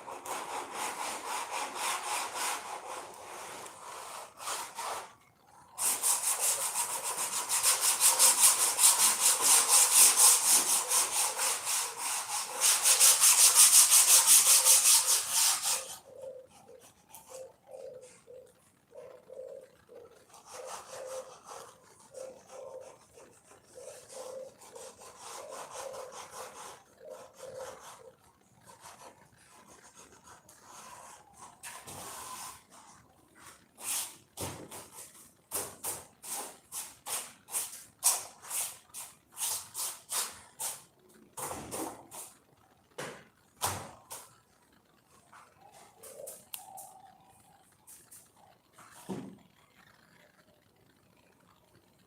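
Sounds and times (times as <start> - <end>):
hand sanding strokes: 0.0 - 5.2, 5.8 - 16.1, 20.3 - 28.1, 28.7 - 40.9.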